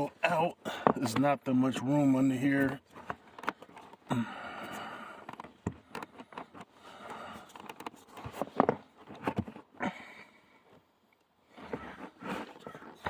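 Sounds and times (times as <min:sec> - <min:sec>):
plastic and metal clicks and knocks: 0:00.8 - 0:01.3, 0:02.7 - 0:04.1, 0:05.2 - 0:06.7, 0:07.4 - 0:09.6.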